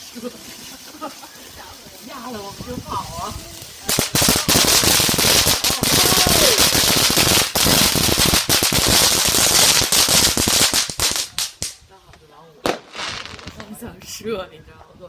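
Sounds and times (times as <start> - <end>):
firework crackling pops: 2.0 - 11.8, 12.6 - 13.8.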